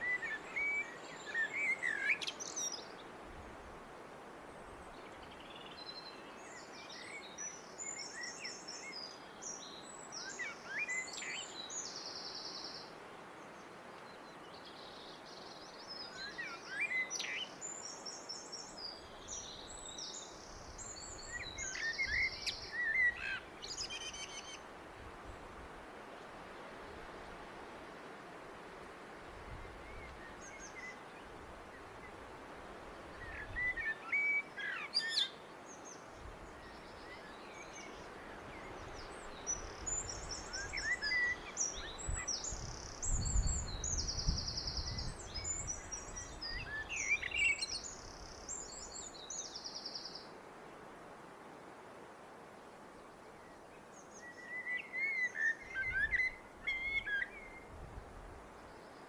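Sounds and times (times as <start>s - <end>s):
blackbird singing: 0.0s - 2.8s, 33.2s - 35.4s, 39.2s - 50.2s, 54.1s - 57.6s.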